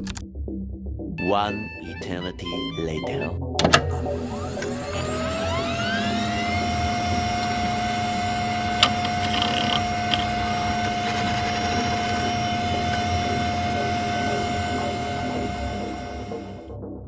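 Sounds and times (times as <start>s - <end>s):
steady mechanical whine: 3.6s - 16.7s
low rumbling hum: 3.8s - 16.7s.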